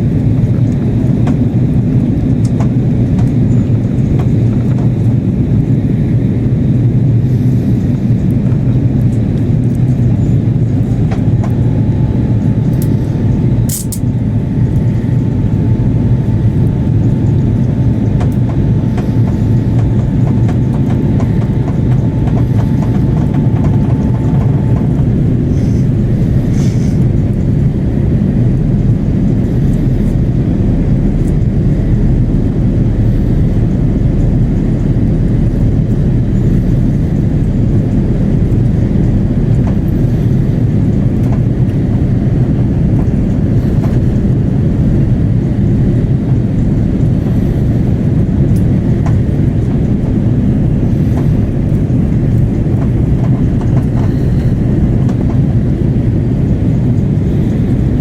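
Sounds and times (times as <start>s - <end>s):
airliner cabin engine roar: 0.0s - 58.0s.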